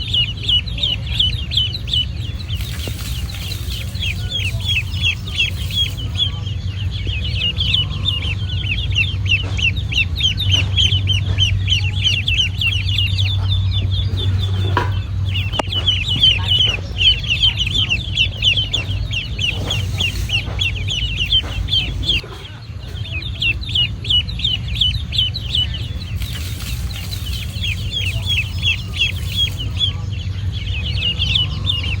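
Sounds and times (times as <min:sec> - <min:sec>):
ducklings peeping: 0:00.0 - 0:32.0
steady low hum: 0:00.0 - 0:32.0.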